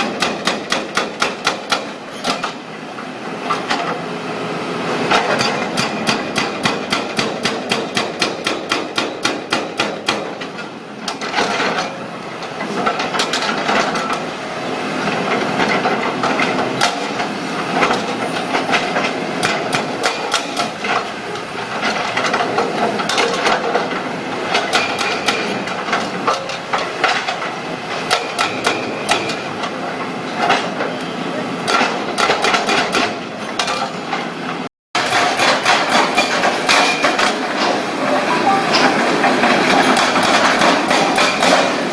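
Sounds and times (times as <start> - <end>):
hydraulic breaker hammering concrete: 0.0 - 2.6, 5.1 - 11.9, 15.3 - 21.1, 21.8 - 29.8, 31.6 - 34.0, 35.0 - 37.5, 39.4 - 41.9.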